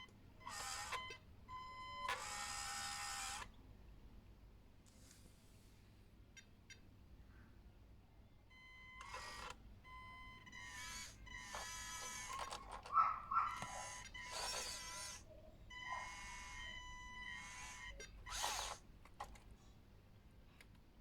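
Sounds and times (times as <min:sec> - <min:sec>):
small electric motors whirring: 0:00.5 - 0:01.1, 0:02.0 - 0:03.5, 0:09.0 - 0:09.6, 0:10.4 - 0:19.4.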